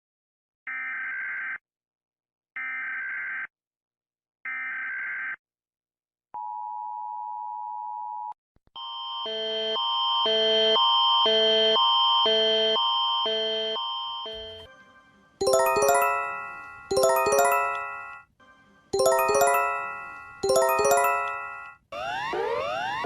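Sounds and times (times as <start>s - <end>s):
rhythmic alternating tones: 15.4s - 18.1s, 19.0s - 21.7s.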